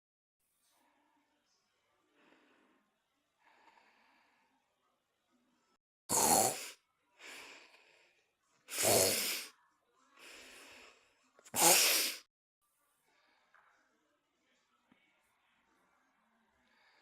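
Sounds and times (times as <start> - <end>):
soft airy breaths: 0.5 - 5.4, 7.1 - 12.3, 14.9 - 17.0
loud snoring: 6.1 - 6.8, 8.7 - 9.5, 11.5 - 12.2.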